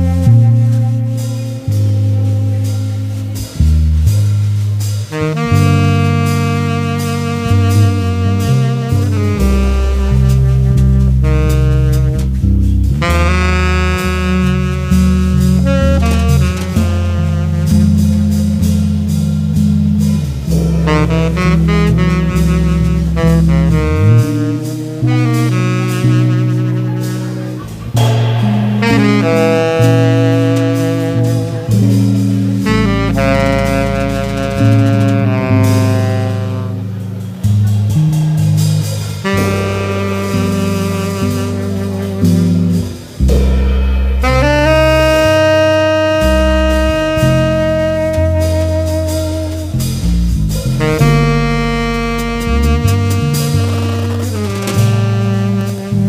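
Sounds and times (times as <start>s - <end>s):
bass line: 0.0s - 56.0s
held melody notes: 0.0s - 56.0s
light cymbal strokes: 27.5s - 33.2s, 42.8s - 46.9s.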